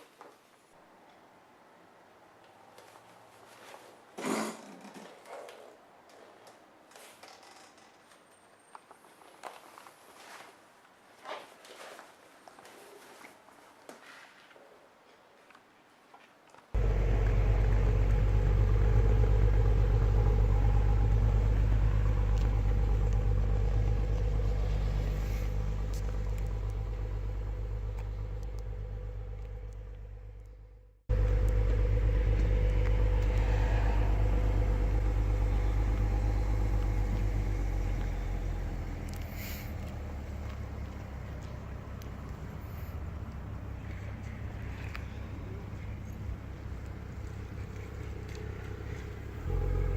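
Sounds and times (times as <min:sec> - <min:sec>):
car engine rumble: 0:16.8 - 0:49.9
road noise: 0:16.8 - 0:49.9.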